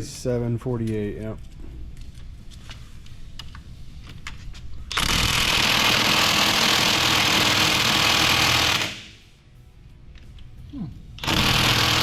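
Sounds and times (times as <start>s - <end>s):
impact wrench spinning lug nut: 4.9s - 9.1s, 11.2s - 12.0s.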